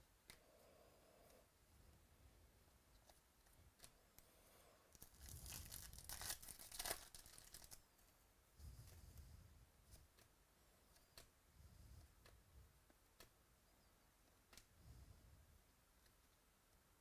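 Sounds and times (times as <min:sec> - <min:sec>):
foil wrapper crinkling and tearing: 0:05.0 - 0:07.8.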